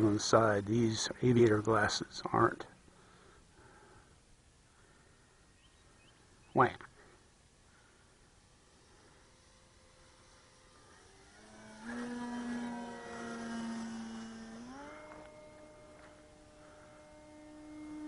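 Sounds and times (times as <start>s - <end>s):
model plane motor whining: 0.0s - 2.0s, 7.0s - 18.0s.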